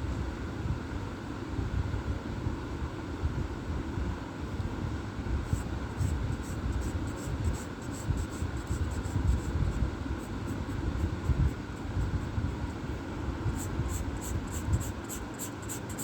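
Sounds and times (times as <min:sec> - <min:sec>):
steady low rumble: 0:04.7 - 0:16.0
drawing tool scratching paper: 0:05.5 - 0:12.9, 0:13.5 - 0:16.0.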